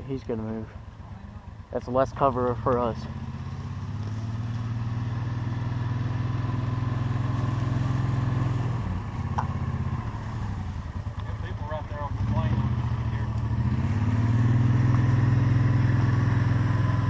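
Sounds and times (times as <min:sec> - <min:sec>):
vehicle engine running: 0:00.0 - 0:17.0.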